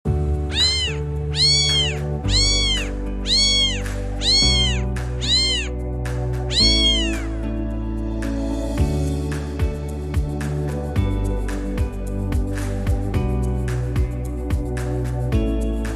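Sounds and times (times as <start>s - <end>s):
music of sustained chords: 0.1s - 15.9s
cat meowing: 0.4s - 5.8s, 6.5s - 7.4s.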